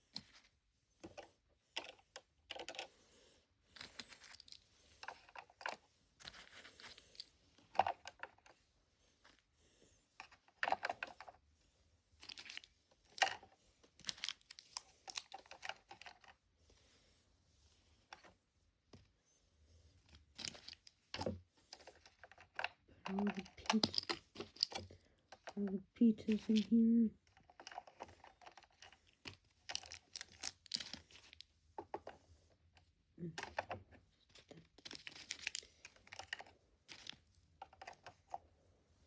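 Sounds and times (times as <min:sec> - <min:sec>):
plastic pieces clicking: 0:01.1 - 0:02.9, 0:03.8 - 0:08.5, 0:12.2 - 0:16.4, 0:20.3 - 0:25.6, 0:26.2 - 0:32.0, 0:33.3 - 0:38.4.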